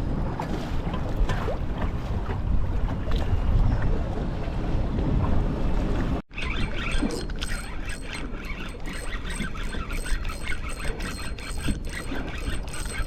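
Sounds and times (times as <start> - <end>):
boat rumble: 0.0 - 13.0
low wind: 0.0 - 13.0
fishing reel clicking: 6.5 - 13.0.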